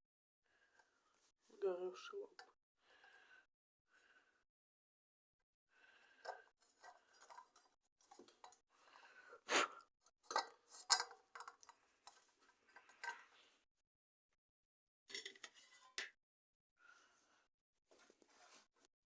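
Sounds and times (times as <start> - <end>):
small clicks and taps of parts: 10.3 - 13.2.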